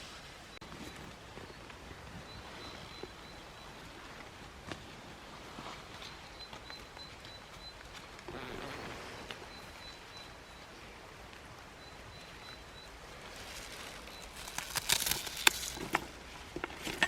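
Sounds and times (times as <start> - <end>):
plants rustling: 12.4 - 17.0
crisp stalk snaps and clicks: 14.2 - 16.1.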